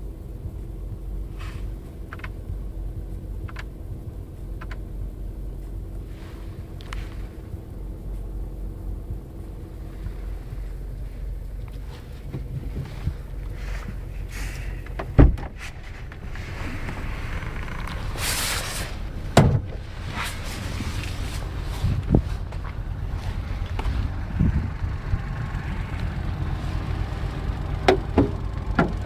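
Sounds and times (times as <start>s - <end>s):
car engine idling: 0.0s - 29.0s
fuel injectors ticking: 0.0s - 29.0s
loud thumps: 14.8s - 17.8s, 19.2s - 19.8s, 27.8s - 29.0s.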